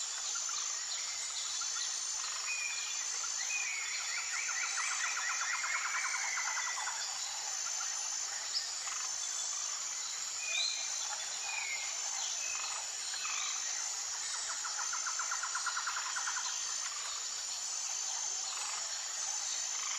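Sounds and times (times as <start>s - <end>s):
high insect drone: 0.0s - 19.9s.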